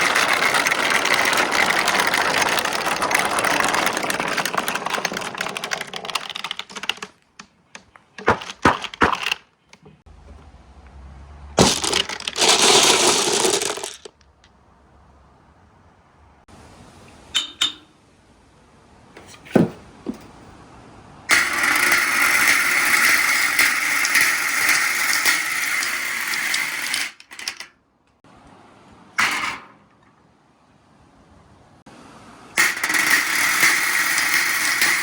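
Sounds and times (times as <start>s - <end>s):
marbles rolling on track: 0.0s - 7.1s, 11.6s - 14.3s, 21.3s - 27.7s, 32.6s - 35.0s
marbles clattering: 0.0s - 7.2s, 7.8s - 9.4s, 11.6s - 14.5s, 21.3s - 27.6s, 32.6s - 35.0s
marbles clicking: 0.0s - 9.4s, 11.6s - 14.3s, 21.3s - 27.6s, 32.6s - 35.0s.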